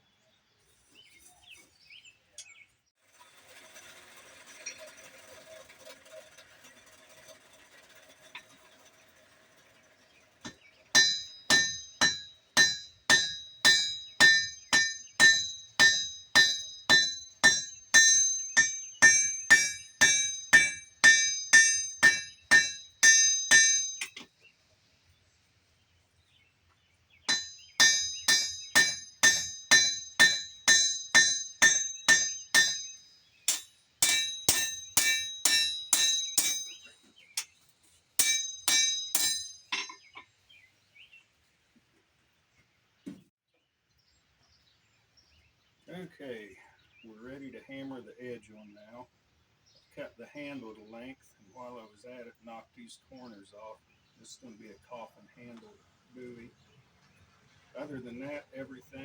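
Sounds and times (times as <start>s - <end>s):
hammer striking steel on anvil: 10.4s - 24.3s, 27.3s - 37.6s, 38.2s - 40.3s.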